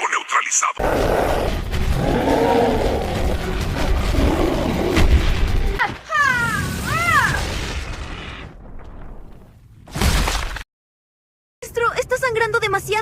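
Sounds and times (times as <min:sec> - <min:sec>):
loud booming blast: 0:00.8 - 0:05.8
sharp impacts: 0:01.0 - 0:09.3.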